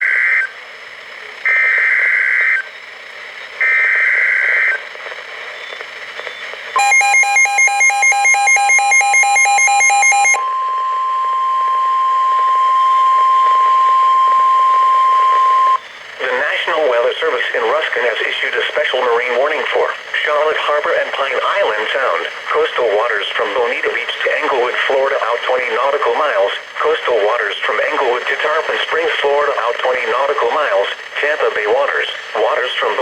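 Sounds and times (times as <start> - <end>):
rapid electronic beeping: 6.8 - 15.8
steady warning alarm tone: 6.8 - 15.8
warbling data tone bursts: 6.8 - 15.8.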